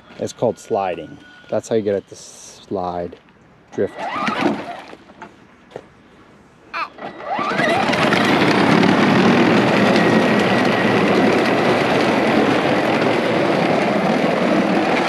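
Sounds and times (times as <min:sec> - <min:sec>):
faint thin whine: 0:00.0 - 0:03.1
electric ride-on toy motors rushing: 0:03.8 - 0:05.1, 0:06.8 - 0:15.0
plastic wheels on ground: 0:03.8 - 0:05.3, 0:06.9 - 0:15.0.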